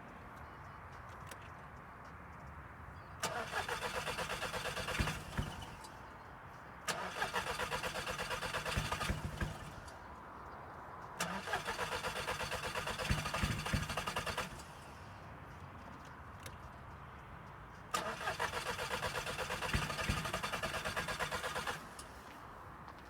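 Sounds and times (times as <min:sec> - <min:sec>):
car engine cranking: 0:03.2 - 0:06.0, 0:06.9 - 0:10.0, 0:11.2 - 0:14.9, 0:17.9 - 0:22.4.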